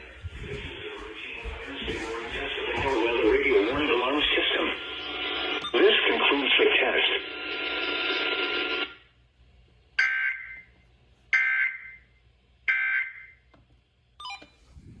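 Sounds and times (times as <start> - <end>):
radio hiss: 0.0 - 8.9.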